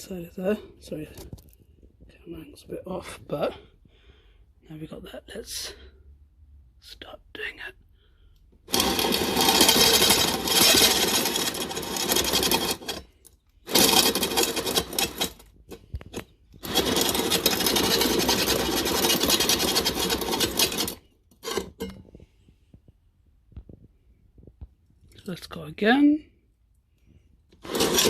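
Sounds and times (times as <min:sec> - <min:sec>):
drill grinding steel blade: 0:08.7 - 0:21.8, 0:27.6 - 0:28.0.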